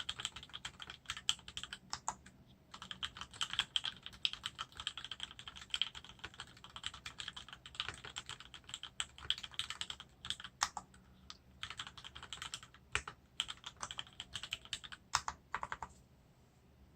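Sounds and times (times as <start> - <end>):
typing on mechanical keyboard: 0.0 - 15.9.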